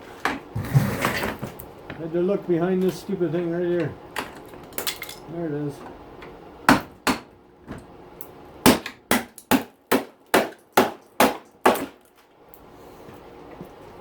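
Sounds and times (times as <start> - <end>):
hammer striking: 8.7 - 12.0.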